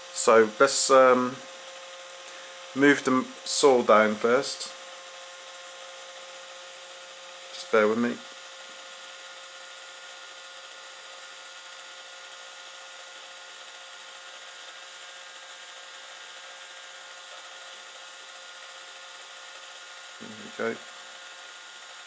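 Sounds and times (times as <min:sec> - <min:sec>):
small electric motors whining: 0:00.0 - 0:22.0.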